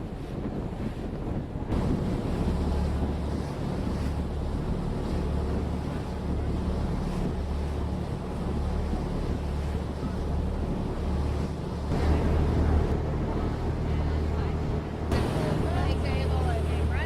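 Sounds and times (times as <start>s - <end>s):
boat engine humming: 0.0s - 17.0s
water rushing along hull: 0.0s - 17.0s
wind buffeting microphone: 0.0s - 17.0s.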